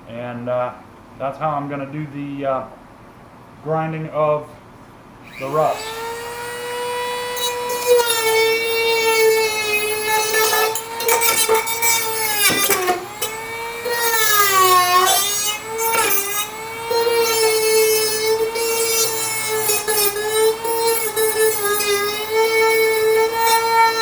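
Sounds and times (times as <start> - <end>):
rotary tool grinding metal: 5.2 - 24.0.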